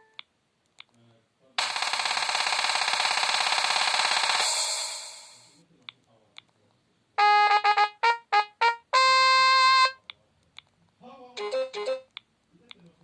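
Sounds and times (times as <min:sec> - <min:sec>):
synthesized phone jingle: 0:11.4 - 0:12.1.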